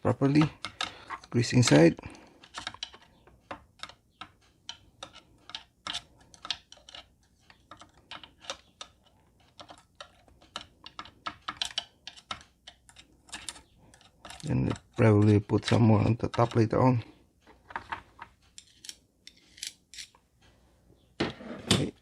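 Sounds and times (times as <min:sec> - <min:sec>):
small plastic parts clicking: 0:02.4 - 0:16.7.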